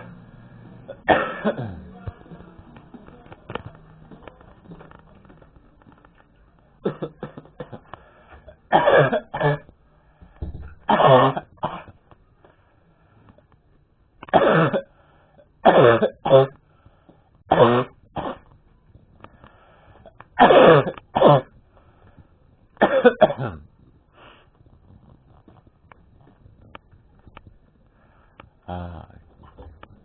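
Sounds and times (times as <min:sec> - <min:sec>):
man coughing hard: 0:00.9 - 0:01.9, 0:06.8 - 0:07.9, 0:08.7 - 0:09.7, 0:10.9 - 0:11.9, 0:14.3 - 0:14.9, 0:15.6 - 0:16.6, 0:20.4 - 0:21.5, 0:22.8 - 0:23.6.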